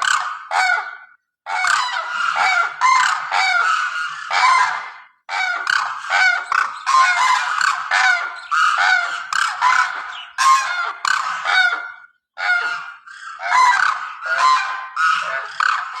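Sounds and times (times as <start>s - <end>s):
geese honking: 1.6s - 11.8s, 12.4s - 16.0s.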